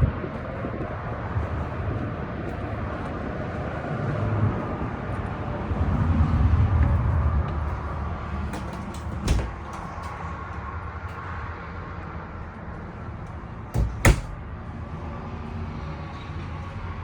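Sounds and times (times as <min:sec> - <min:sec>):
steady low rumble: 0:00.0 - 0:11.0
cabinet doors knocking shut: 0:13.8 - 0:14.4.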